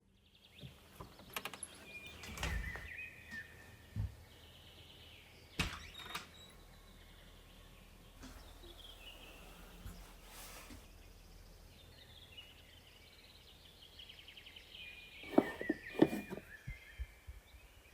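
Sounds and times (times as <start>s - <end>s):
birds chirping faintly: 11.4s - 17.0s
handling clicks and knocks: 15.3s - 16.4s.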